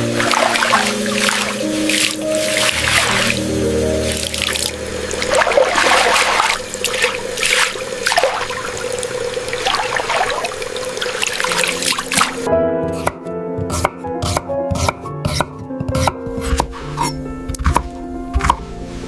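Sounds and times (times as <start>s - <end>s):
water running in a sink: 0.0s - 12.5s.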